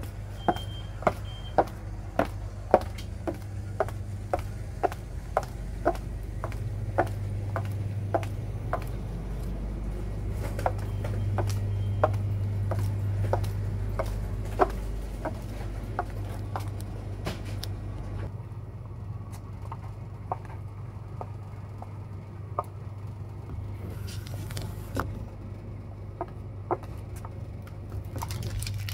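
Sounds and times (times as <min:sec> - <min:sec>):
high heels clicking on hard floor: 0:00.0 - 0:09.5, 0:10.4 - 0:17.6
low hum: 0:00.0 - 0:28.9.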